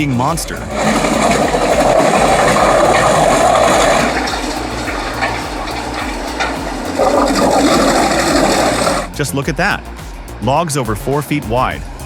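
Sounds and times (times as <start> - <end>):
shredder grinding wood: 0.6 - 9.1.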